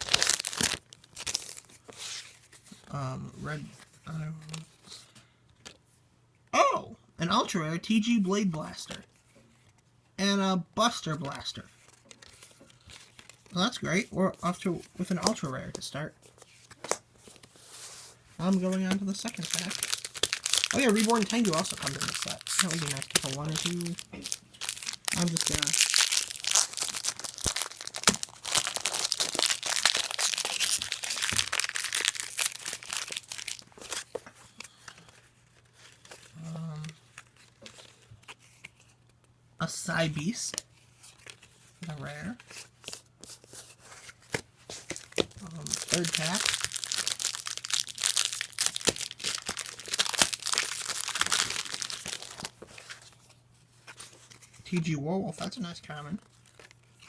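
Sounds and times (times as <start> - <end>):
foil wrapper crinkling: 0.0 - 1.9, 18.4 - 38.9, 44.0 - 54.8.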